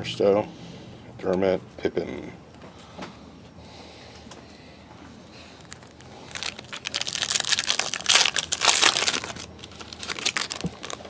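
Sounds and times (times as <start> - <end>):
wrapper crinkling: 5.5 - 11.0.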